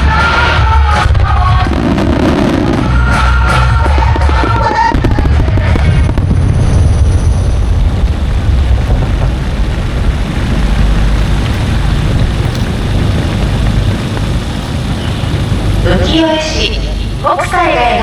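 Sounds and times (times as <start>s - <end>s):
music: 0.0s - 6.2s
fireworks booms and crackles: 0.0s - 18.0s.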